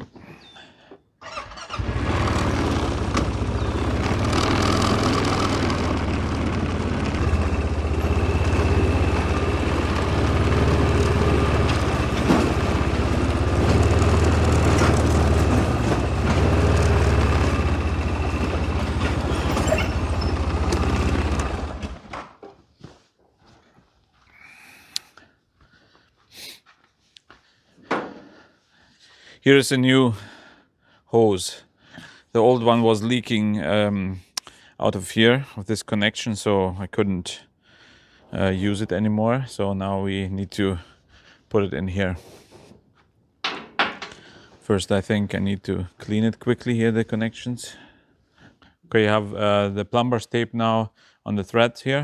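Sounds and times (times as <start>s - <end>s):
vehicle engine running: 1.7s - 22.1s.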